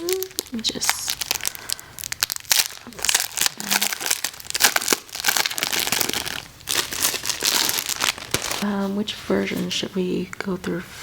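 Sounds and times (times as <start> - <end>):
plastic packaging crinkling: 0.0 - 8.7.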